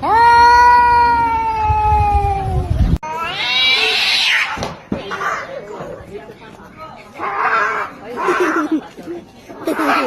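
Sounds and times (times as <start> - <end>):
cat yowling: 3.0 - 4.6.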